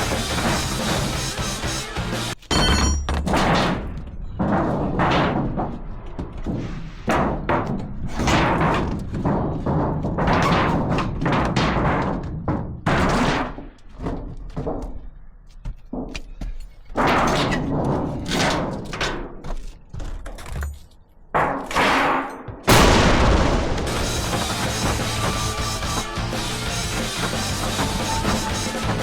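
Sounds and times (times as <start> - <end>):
music: 0.0 - 2.4, 23.8 - 29.0.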